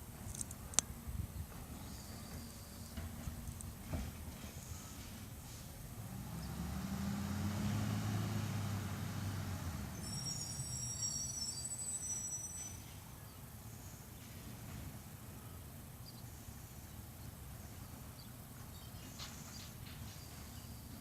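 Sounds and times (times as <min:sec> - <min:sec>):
high-pitched squeals: 0:09.9 - 0:13.1.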